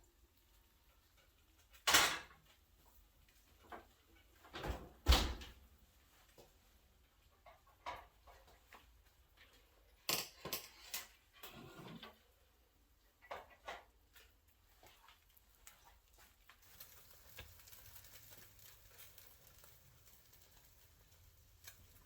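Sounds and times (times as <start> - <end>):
dishes and utensils clinking: 10.0 - 12.0.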